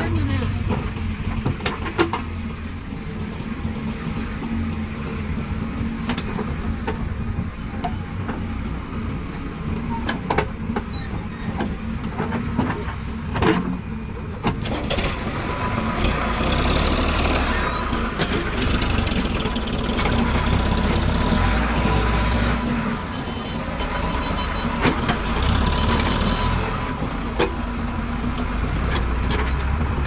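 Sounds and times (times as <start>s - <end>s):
diesel machinery engine running: 10.6s - 30.0s.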